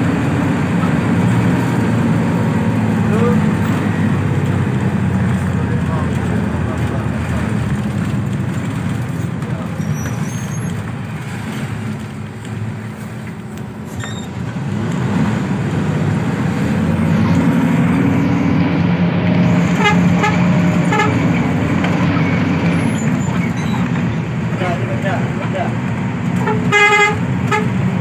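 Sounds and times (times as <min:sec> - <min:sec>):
bus engine rumble: 0:00.0 - 0:28.0
traffic: 0:00.0 - 0:28.0
vehicle horn: 0:19.7 - 0:21.3, 0:26.4 - 0:27.7.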